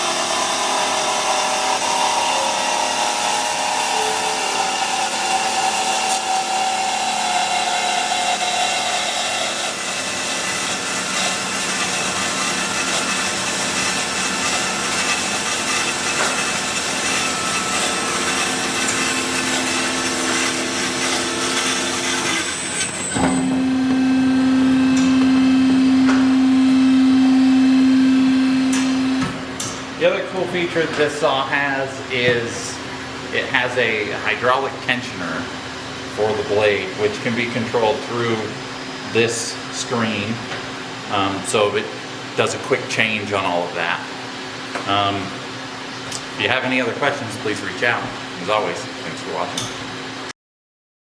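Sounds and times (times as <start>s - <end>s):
band saw cutting wood: 0.0s - 29.2s
steady machine hum: 0.0s - 50.3s.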